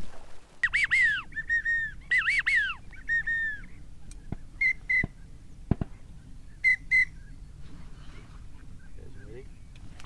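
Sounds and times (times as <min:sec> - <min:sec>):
duck whistle call: 0:00.6 - 0:03.6, 0:04.6 - 0:05.2, 0:06.6 - 0:07.1.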